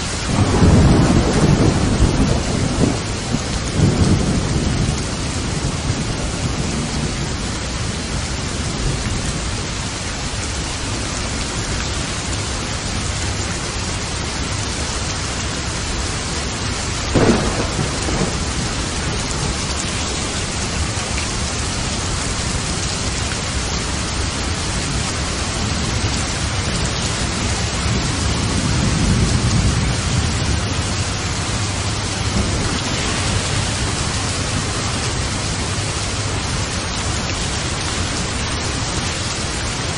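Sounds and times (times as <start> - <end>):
thunder rumbling: 0.0 - 10.0, 15.6 - 39.9
heavy rain: 0.0 - 39.9
sharp thunder crack: 17.1 - 20.4, 32.2 - 35.9.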